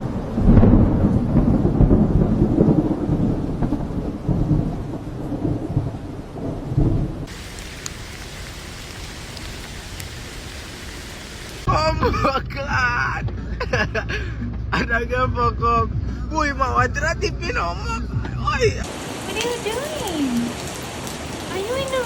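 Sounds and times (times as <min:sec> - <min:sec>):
thunder rumbling: 0:00.0 - 0:11.7
rain hissing: 0:07.2 - 0:11.8, 0:17.8 - 0:22.0
water drips ticking: 0:07.3 - 0:11.7, 0:18.8 - 0:22.0.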